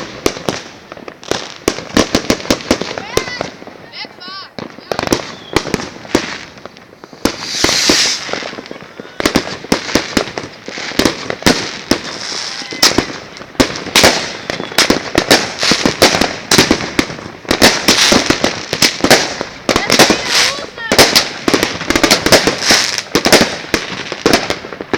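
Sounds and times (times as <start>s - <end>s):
firecrackers banging: 0.0s - 24.9s
hissing crackling firework burst: 4.6s - 24.9s.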